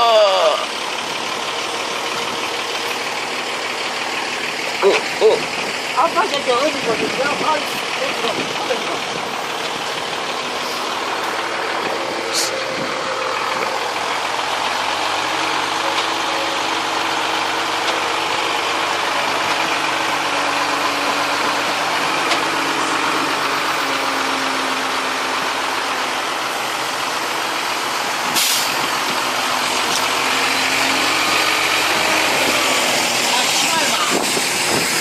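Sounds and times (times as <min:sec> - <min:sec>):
boat engine running: 0:00.0 - 0:35.0
brief hiss: 0:28.4 - 0:28.7.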